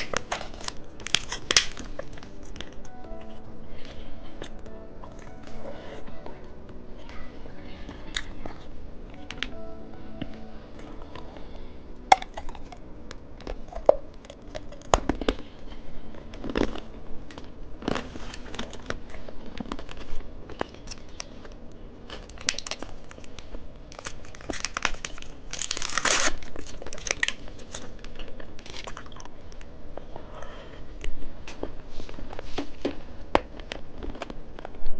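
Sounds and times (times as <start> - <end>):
plastic wrappers crinkling: 0.0 - 3.0, 10.7 - 29.7.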